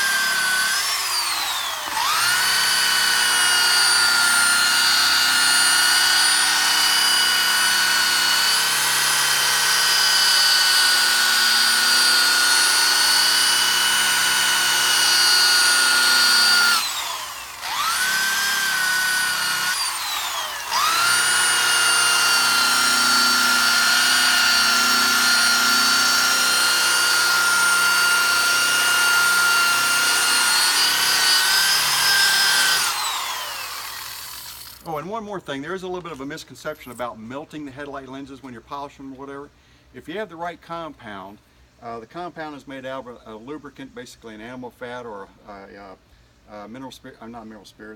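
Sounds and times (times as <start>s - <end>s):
buffing wheel motor whining: 0.0s - 34.8s.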